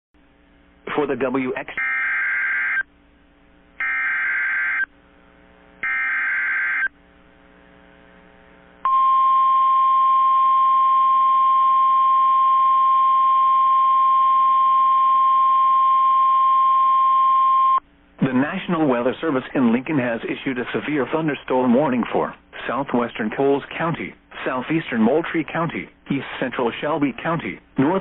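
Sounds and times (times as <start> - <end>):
steady warning alarm tone: 1.7 - 2.9, 3.8 - 4.9, 5.8 - 6.9
buzzy data warble: 5.8 - 6.9.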